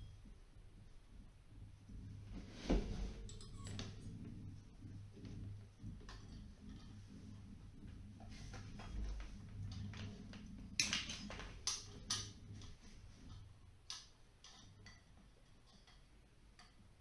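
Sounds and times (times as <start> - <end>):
low steady hum: 0.0 - 17.0
clicks and snaps of wiring work: 9.1 - 16.8.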